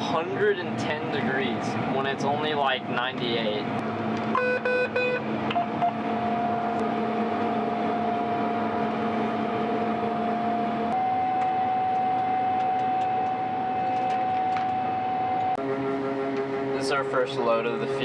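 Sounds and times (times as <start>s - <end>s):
combine harvester droning: 0.0s - 18.0s
electronic beeps: 4.4s - 6.6s, 11.0s - 15.6s.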